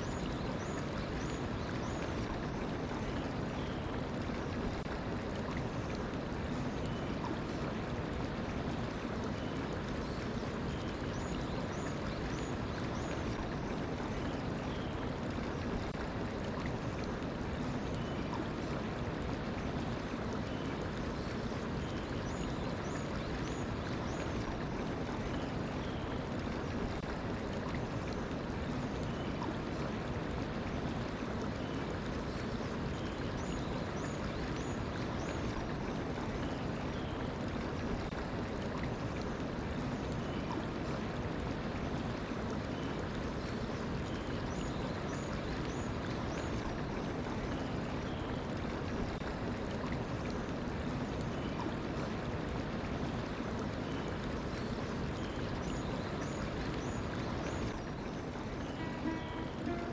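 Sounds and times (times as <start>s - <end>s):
mountain stream flowing: 0.0s - 59.9s
faint high bird chirps: 58.6s - 59.9s.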